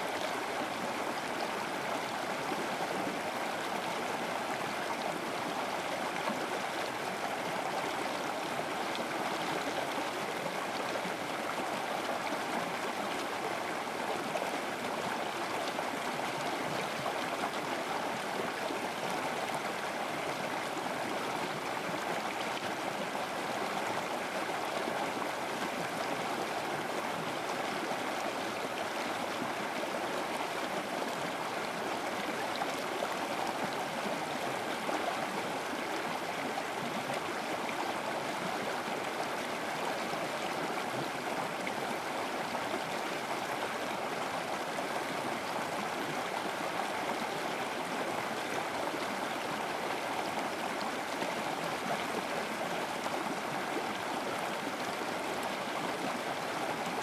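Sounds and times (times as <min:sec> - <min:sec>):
river water rushing and gurgling: 0:00.0 - 0:57.0.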